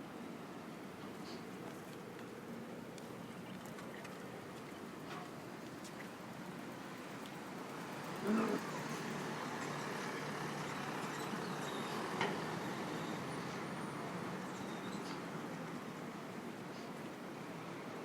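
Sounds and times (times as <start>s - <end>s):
vehicle passing with low hum: 6.7s - 14.5s.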